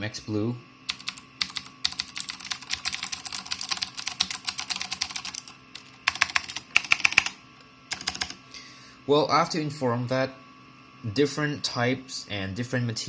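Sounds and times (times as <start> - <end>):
mechanical keyboard typing: 0.9 - 8.4.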